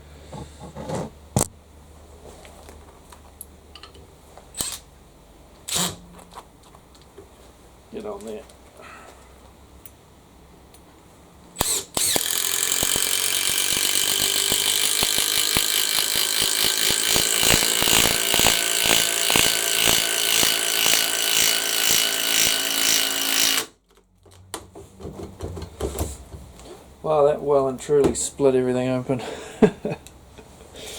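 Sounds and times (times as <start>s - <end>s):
impact driver hammering: 11.6s - 23.8s.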